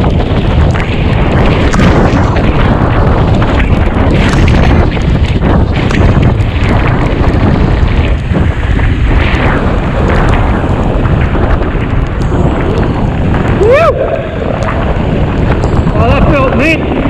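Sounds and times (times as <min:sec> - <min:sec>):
bike clattering on rough trail: 0:00.0 - 0:17.0
wind buffeting microphone: 0:00.0 - 0:17.0
person whooping: 0:13.6 - 0:14.4.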